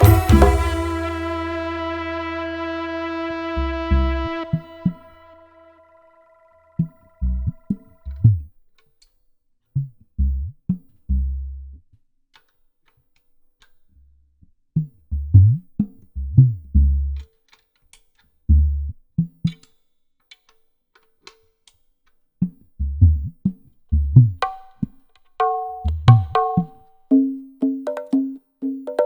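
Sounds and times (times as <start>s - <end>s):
higher tuned drum hits: 0.0s - 2.1s
deep hand drum strokes: 0.0s - 2.6s.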